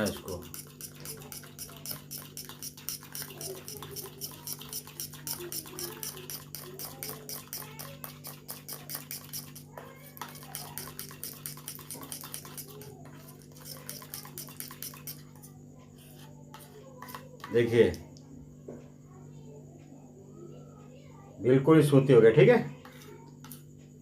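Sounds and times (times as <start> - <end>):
spoon scraping paste in dish: 0.0 - 18.0, 22.8 - 23.6.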